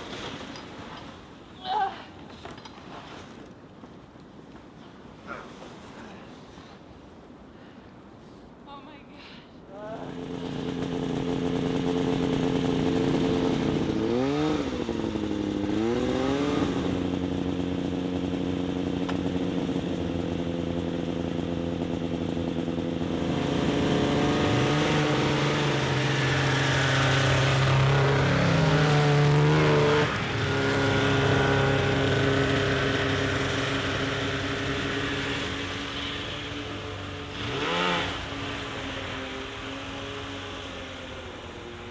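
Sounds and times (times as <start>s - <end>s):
snowmobile engine revving: 9.8s - 41.9s.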